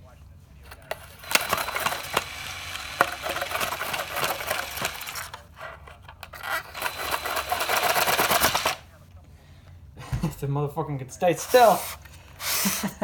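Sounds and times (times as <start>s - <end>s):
toy chainsaw clattering rattle: 0.9s - 5.4s, 6.3s - 8.8s.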